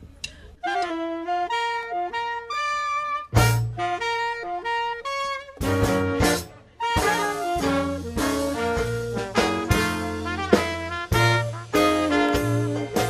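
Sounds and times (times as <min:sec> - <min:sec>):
dixieland jazz band playing: 0:00.6 - 0:13.0
drum hits: 0:07.0 - 0:13.0.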